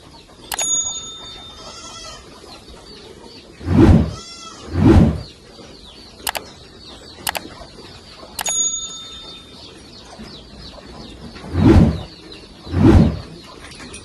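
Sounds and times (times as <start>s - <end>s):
small birds chirping: 0.0s - 14.0s
sharp metallic clinks: 0.5s - 1.7s, 8.4s - 9.5s.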